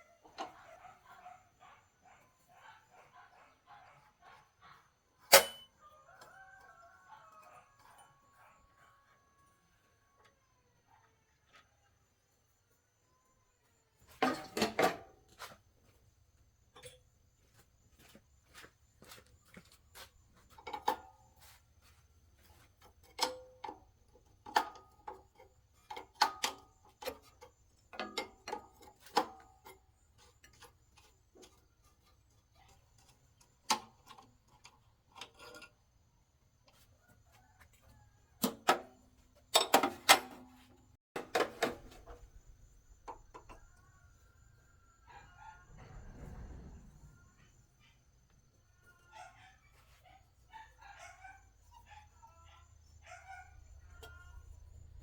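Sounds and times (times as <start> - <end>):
metal tools clinking: 5.3 - 5.7.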